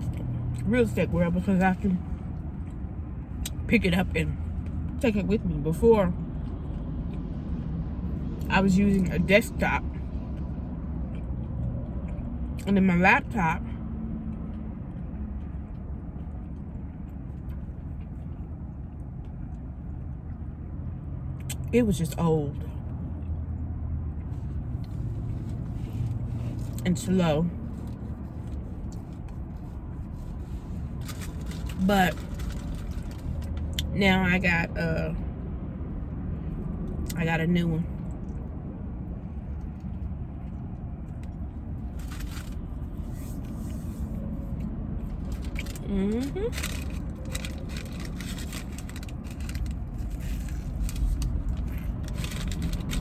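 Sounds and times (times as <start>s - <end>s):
low rumble inside car: 0.0s - 53.0s
car engine idling: 39.2s - 53.0s.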